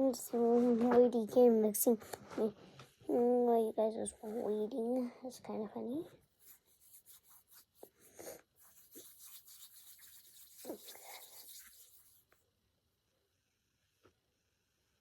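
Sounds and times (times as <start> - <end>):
hands squishing modelling dough: 6.3 - 12.4.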